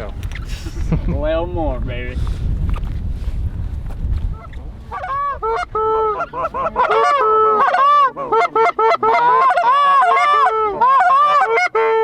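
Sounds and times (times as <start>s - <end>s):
geese honking: 4.4s - 12.0s.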